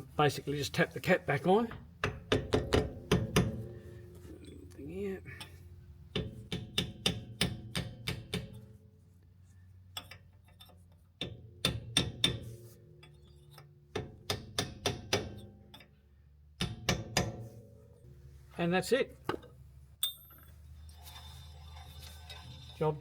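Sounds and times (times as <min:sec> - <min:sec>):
hammer tapping on metal: 0:02.0 - 0:03.7.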